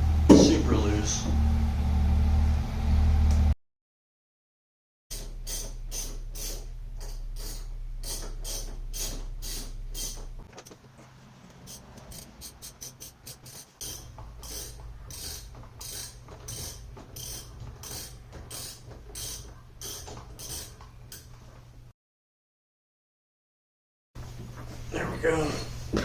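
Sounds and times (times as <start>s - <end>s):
ratchet wrench clicking: 5.1s - 10.3s, 11.7s - 21.3s.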